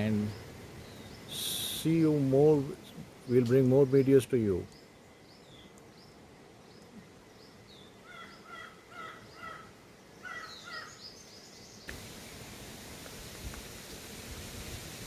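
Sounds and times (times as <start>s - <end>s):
steady hiss: 0.0s - 15.0s
short harsh bird calls: 8.0s - 11.2s.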